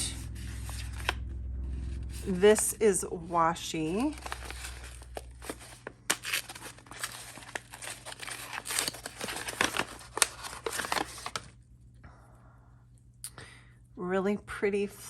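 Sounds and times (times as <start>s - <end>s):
packaging crinkling and tearing: 3.8s - 11.6s.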